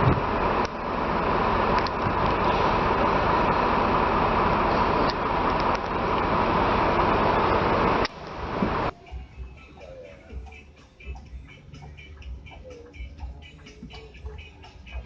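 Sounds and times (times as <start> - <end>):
steady whine: 0.0 - 9.6
coach engine and road noise: 0.0 - 15.0.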